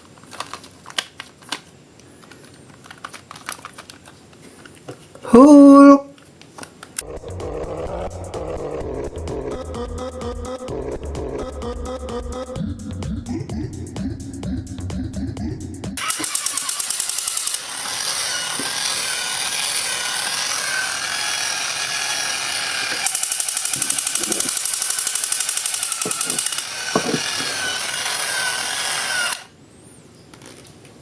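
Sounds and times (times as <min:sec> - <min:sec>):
small motor whirring: 0:16.0 - 0:29.5.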